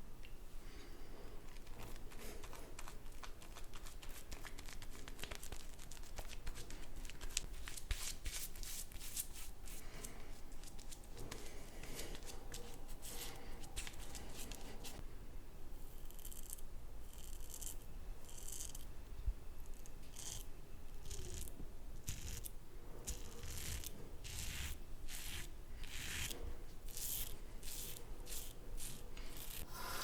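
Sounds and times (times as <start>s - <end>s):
razor scraping stubble: 21.0s - 30.0s.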